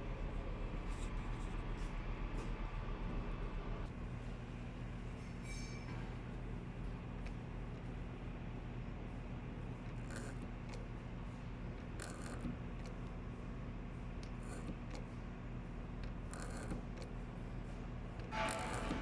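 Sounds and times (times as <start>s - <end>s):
electric machine hum: 0.0s - 19.0s
short scraping sounds: 18.3s - 19.0s.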